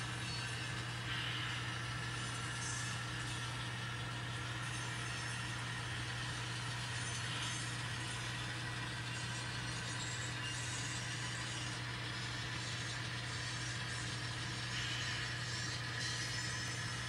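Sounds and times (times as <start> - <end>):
model locomotive diesel engine sound: 0.0 - 17.0.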